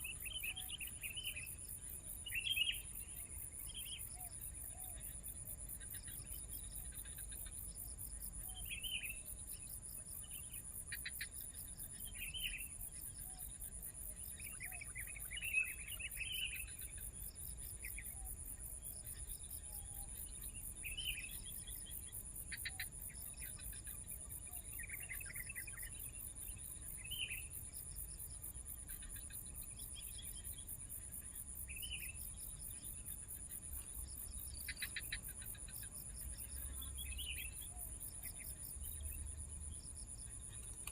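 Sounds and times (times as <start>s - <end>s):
bird chirps: 28.9s - 40.9s.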